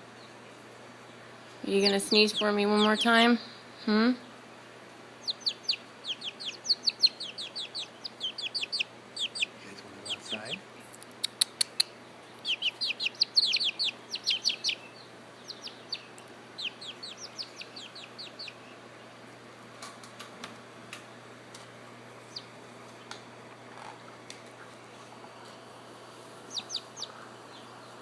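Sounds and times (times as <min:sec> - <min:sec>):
chicks peeping: 0:01.6 - 0:03.5, 0:05.1 - 0:20.3, 0:22.1 - 0:24.0, 0:26.1 - 0:28.0.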